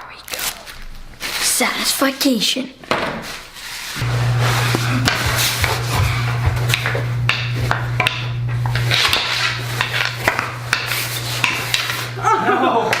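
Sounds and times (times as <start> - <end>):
hockey sticks clacking and scraping: 2.9 - 12.2, 12.8 - 13.0
low hum: 4.0 - 10.7.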